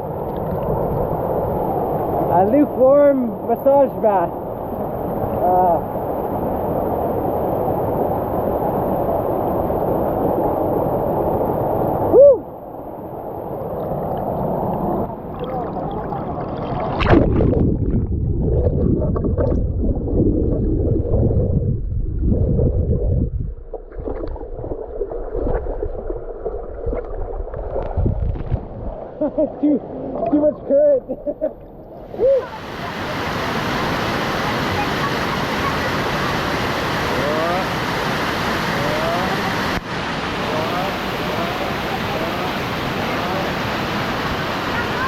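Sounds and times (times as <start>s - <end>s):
man shouting woo: 12.1s - 12.5s
water churning and splashing: 13.5s - 31.0s, 31.6s - 45.0s.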